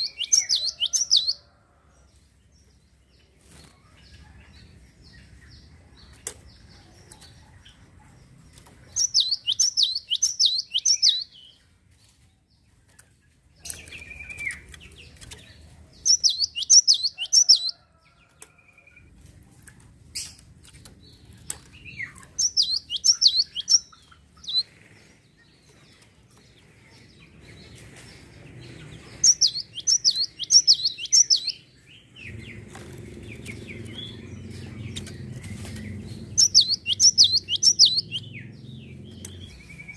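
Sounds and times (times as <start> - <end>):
songbird chirping: 0.0 - 39.9
scattered clicks: 32.6 - 37.3.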